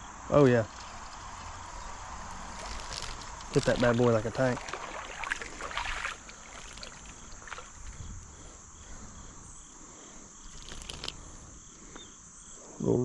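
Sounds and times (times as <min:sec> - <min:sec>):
insects chirping: 0:00.0 - 0:13.0
water splashing: 0:00.7 - 0:08.5.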